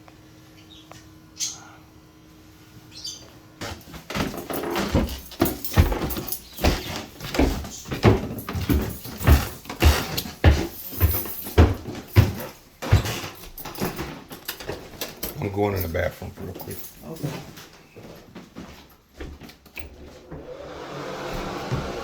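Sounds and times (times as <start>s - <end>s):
footsteps walking: 3.2s - 20.6s, 21.2s - 22.0s.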